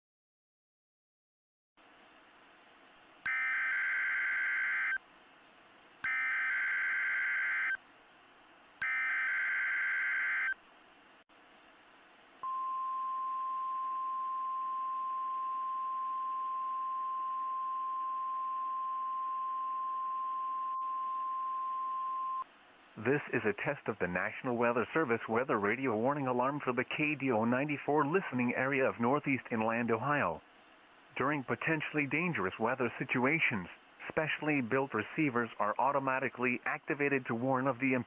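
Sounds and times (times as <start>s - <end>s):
harsh digital data warble: 3.3s - 5.0s, 6.1s - 7.8s
steady warning alarm tone: 3.3s - 5.0s, 6.0s - 7.8s, 8.8s - 10.6s.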